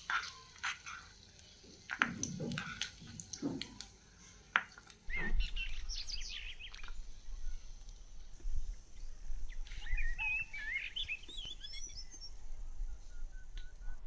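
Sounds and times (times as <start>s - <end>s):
bird chirping: 5.0s - 14.0s.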